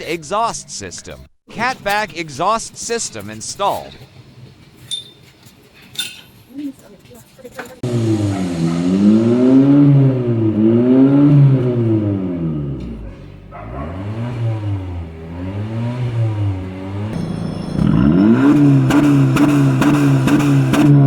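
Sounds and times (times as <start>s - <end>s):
car engine revving through exhaust: 7.8s - 21.0s.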